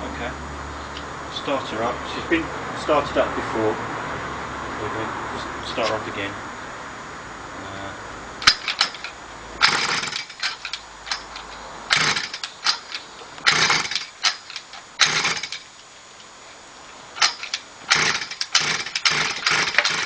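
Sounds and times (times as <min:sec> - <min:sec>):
small engine pull-start rasps: 0:08.4 - 0:15.7, 0:17.2 - 0:20.0.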